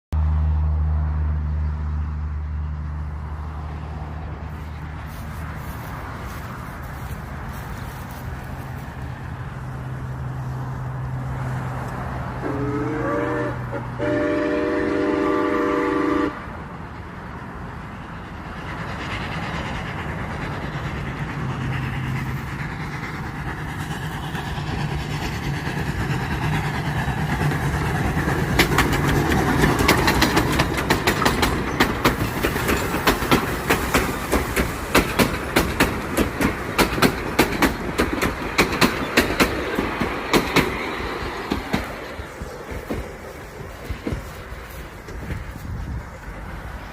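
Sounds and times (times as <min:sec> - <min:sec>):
train rumble: 0:00.1 - 0:46.9
train horn blast: 0:12.4 - 0:16.6
train wheels clicking over rail joints: 0:16.8 - 0:46.9.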